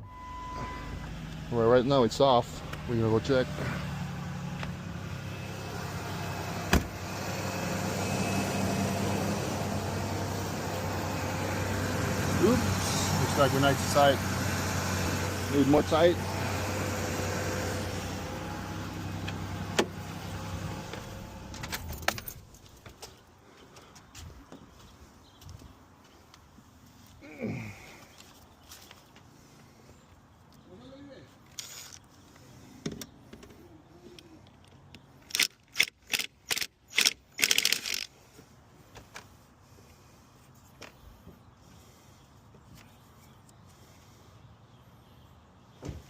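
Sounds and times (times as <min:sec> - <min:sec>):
engine idling: 0:00.1 - 0:22.2
ratchet wrench clicking: 0:35.3 - 0:38.1.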